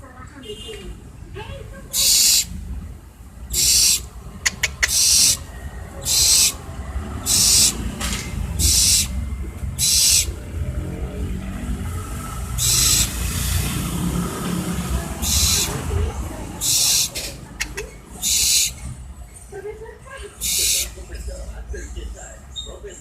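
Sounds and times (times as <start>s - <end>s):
owl hissing screeches: 1.9s - 2.6s, 3.5s - 10.4s, 12.2s - 14.0s, 15.2s - 18.8s, 20.4s - 21.0s
sharp clicks: 4.5s - 5.2s, 17.1s - 17.9s.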